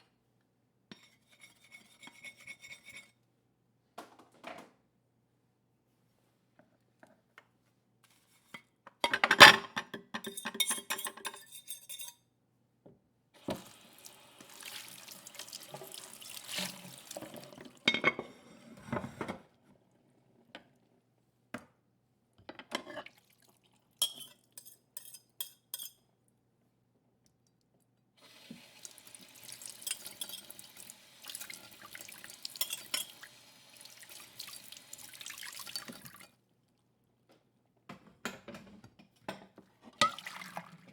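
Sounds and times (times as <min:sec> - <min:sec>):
plates scraping and clinking: 0:09.1 - 0:12.2, 0:29.8 - 0:30.6, 0:32.6 - 0:33.3.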